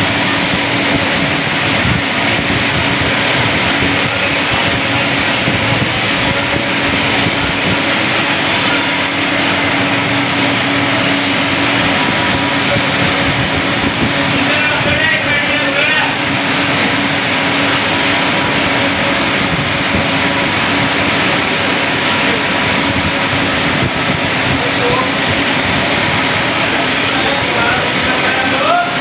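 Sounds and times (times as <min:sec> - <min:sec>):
street traffic hum: 0:00.0 - 0:29.0.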